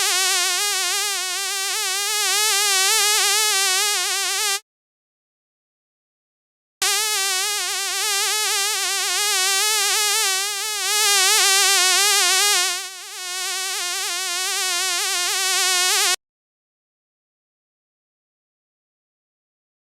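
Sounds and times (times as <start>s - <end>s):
fly buzzing: 0.0s - 4.6s, 6.8s - 16.2s.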